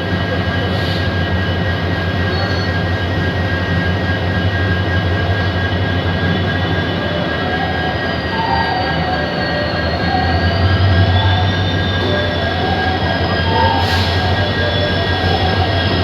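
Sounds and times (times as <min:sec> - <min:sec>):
diesel locomotive humming: 0:00.0 - 0:16.0.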